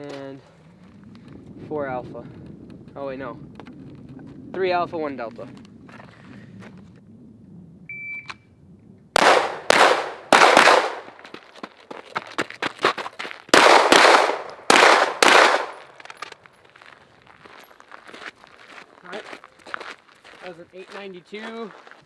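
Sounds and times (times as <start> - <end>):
shot timer beep: 7.9 - 8.3
pistol shots: 9.2 - 11.4, 13.5 - 16.3.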